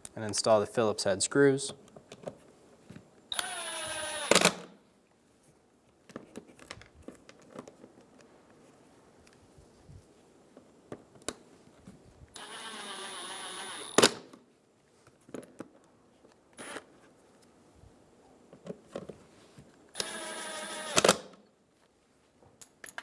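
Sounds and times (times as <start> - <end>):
electric screwdriver whining: 3.3 - 4.7, 12.4 - 14.2, 16.6 - 16.9, 20.0 - 21.3.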